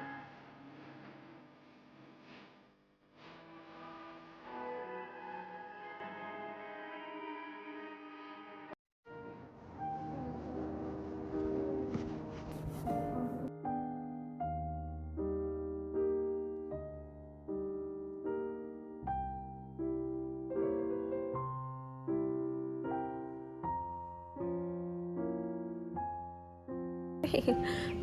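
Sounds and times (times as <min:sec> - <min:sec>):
soft piano chords: 0:09.1 - 0:28.0.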